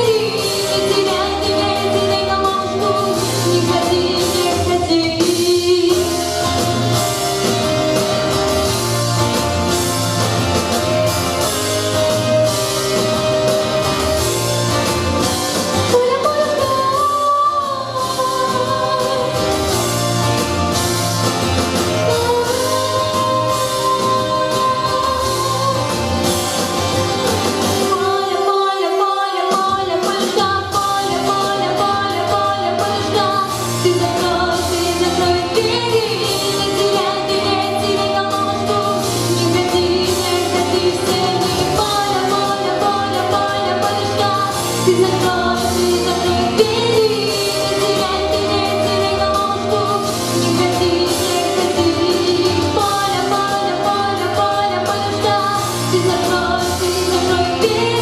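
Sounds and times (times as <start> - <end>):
person singing: 0.0 - 8.9, 15.6 - 20.5, 21.8 - 26.8, 27.7 - 58.0
instrumental music with bass beat: 0.0 - 28.1.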